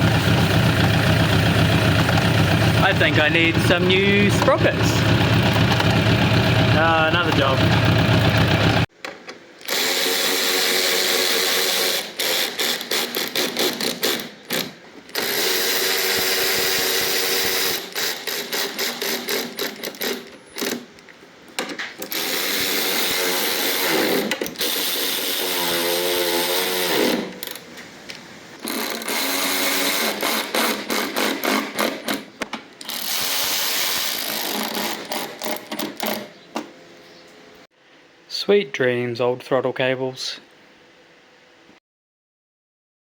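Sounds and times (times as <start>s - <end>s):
handheld power tool motor bursts: 9.6s - 20.8s, 22.0s - 27.6s, 28.6s - 36.3s.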